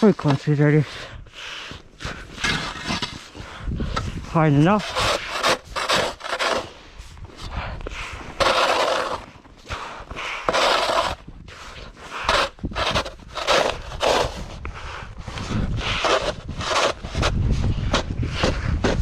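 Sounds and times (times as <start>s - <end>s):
shovel scraping snow: 2.0s - 7.2s, 8.2s - 14.6s, 15.6s - 17.3s.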